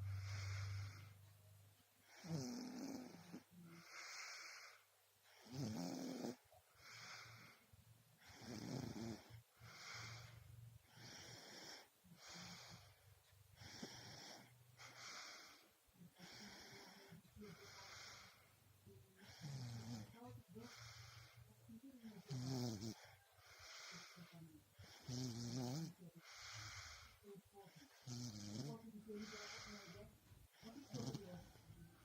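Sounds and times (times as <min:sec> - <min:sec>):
child snoring: 0:00.0 - 0:01.2, 0:02.1 - 0:07.6, 0:08.2 - 0:13.0, 0:13.6 - 0:15.6, 0:16.2 - 0:18.4, 0:19.2 - 0:21.4, 0:22.1 - 0:27.2, 0:27.9 - 0:30.0, 0:30.6 - 0:32.0
child breathing: 0:00.0 - 0:01.3, 0:03.7 - 0:04.9, 0:06.7 - 0:07.7.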